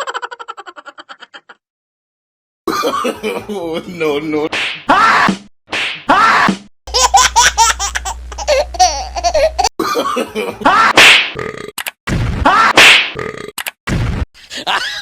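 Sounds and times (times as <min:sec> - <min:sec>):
high-pitched laughter: 0:00.0 - 0:01.6, 0:06.1 - 0:09.7.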